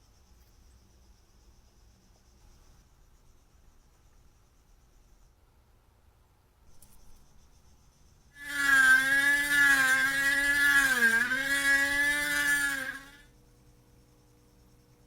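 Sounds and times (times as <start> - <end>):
small electric motor whining: 8.4 - 13.3.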